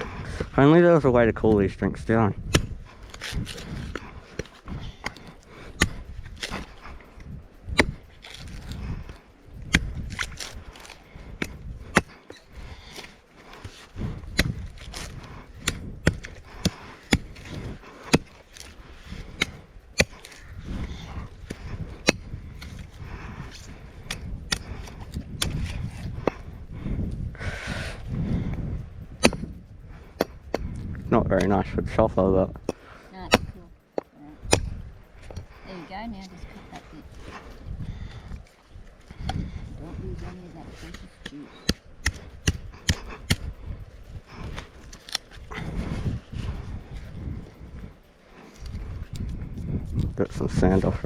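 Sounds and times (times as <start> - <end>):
chopper chopping coconut: 7.7 - 8.8, 12.9 - 26.4, 40.8 - 43.5.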